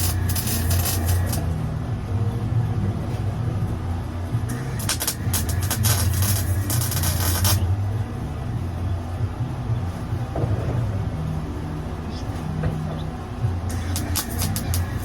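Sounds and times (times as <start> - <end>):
arc welding crackle: 0.0 - 1.8, 4.3 - 7.8, 13.7 - 15.0
steady low hum: 0.0 - 15.0.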